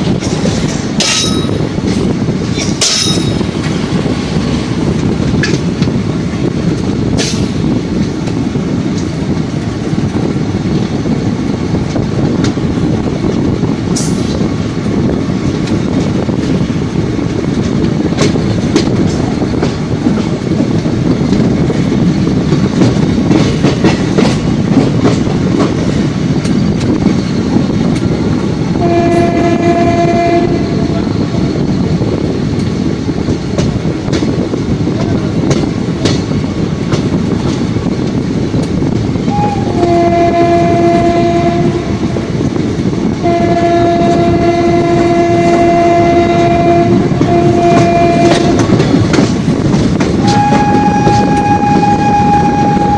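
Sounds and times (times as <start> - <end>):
wheels clicking over rail joints: 0.0 - 29.4, 46.9 - 52.9
train wheels rumbling on rails: 0.0 - 52.9
locomotive horn blasts: 28.8 - 31.1, 39.3 - 42.2, 43.2 - 48.7, 50.2 - 52.9.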